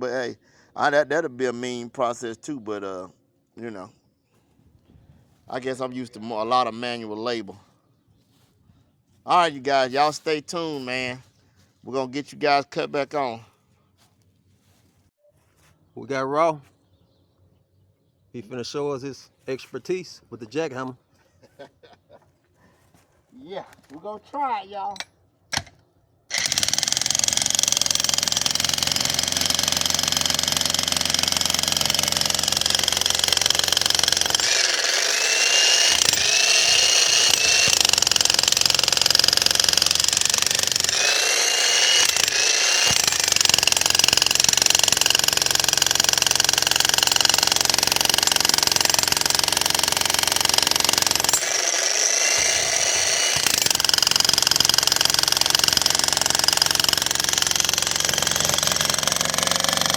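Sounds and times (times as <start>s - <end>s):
electric jackhammer hammering concrete: 26.3s - 59.9s.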